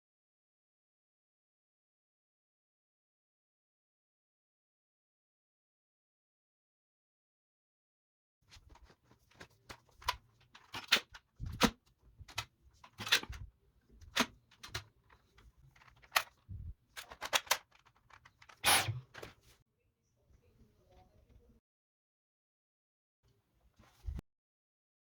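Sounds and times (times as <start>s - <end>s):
hard objects clicking and clattering: 8.6s - 19.4s.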